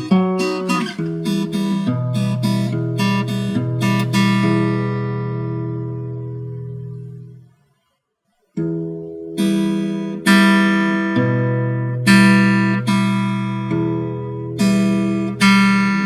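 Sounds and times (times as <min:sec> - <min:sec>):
acoustic guitar chords ringing: 0:00.0 - 0:07.9, 0:08.5 - 0:16.0.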